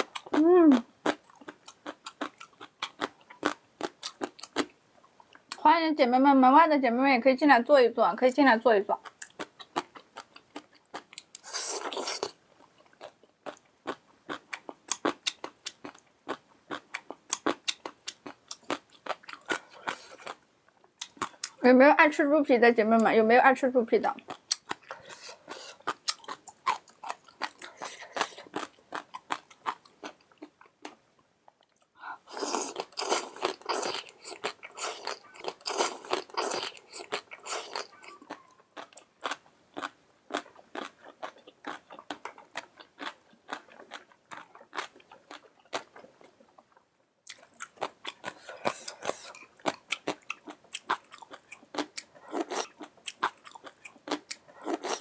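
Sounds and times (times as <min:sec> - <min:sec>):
chewing and crunching: 0:00.0 - 0:05.6, 0:09.0 - 0:21.6, 0:24.2 - 0:55.0.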